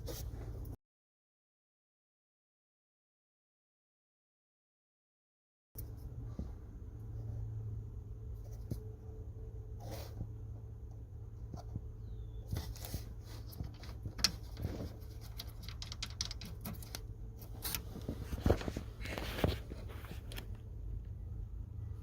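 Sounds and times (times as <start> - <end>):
steady low hum: 5.8 - 22.0
handling clicks and rustles: 11.4 - 21.2.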